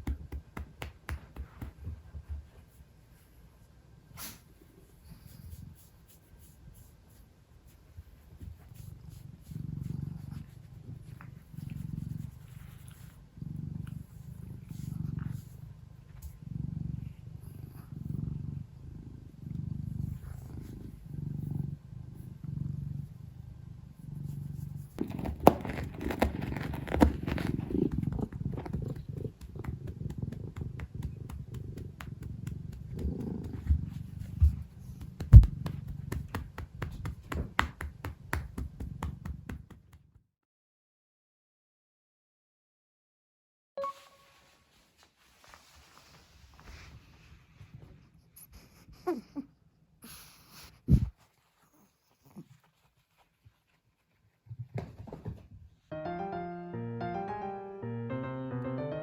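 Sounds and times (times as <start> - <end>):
cat purring: 0.0 - 40.1, 45.6 - 55.5
rustling and rubbing: 24.1 - 39.7, 44.0 - 48.3, 50.4 - 55.8.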